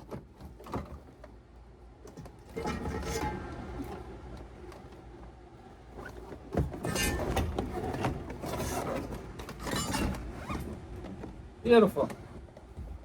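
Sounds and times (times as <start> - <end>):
scraping and rustling: 5.9 - 11.2.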